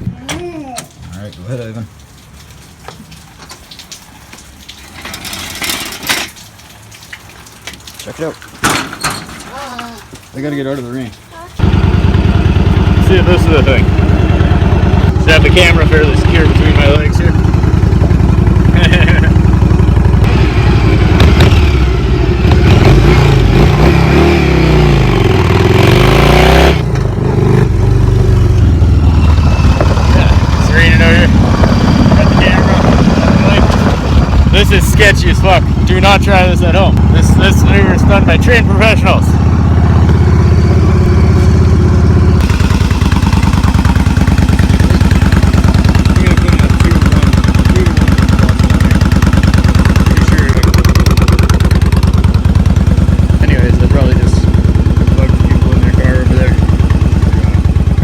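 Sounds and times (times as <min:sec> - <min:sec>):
motorcycle engine running: 0:11.6 - 0:58.0.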